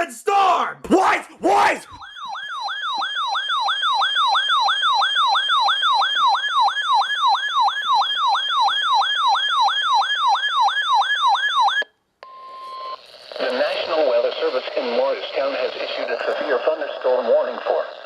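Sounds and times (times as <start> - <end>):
electronic siren yelp: 1.9 - 11.9.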